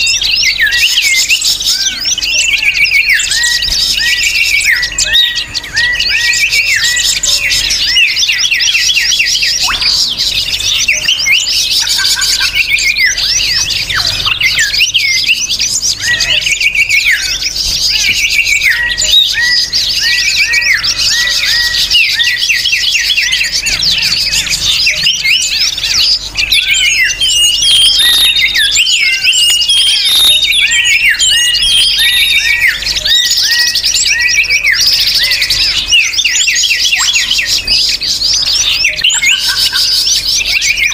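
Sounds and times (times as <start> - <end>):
small birds chirping: 0.0 - 40.9.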